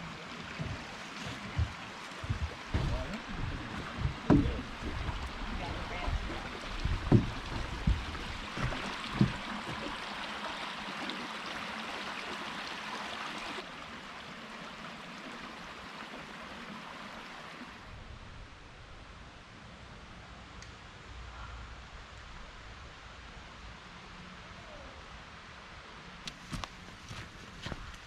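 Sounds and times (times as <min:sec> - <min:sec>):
creek water running: 0:00.0 - 0:18.7, 0:21.2 - 0:28.0
footsteps on footbridge: 0:00.4 - 0:10.1, 0:26.3 - 0:28.0.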